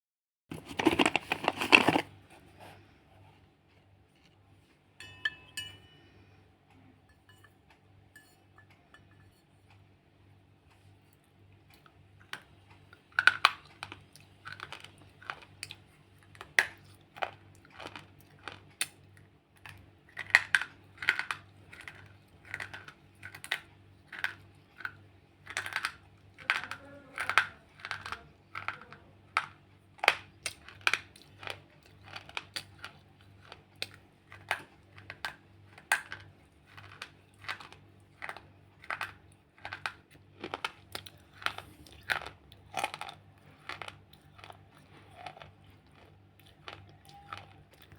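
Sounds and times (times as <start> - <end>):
chewing crisp crunches: 10.7 - 47.9.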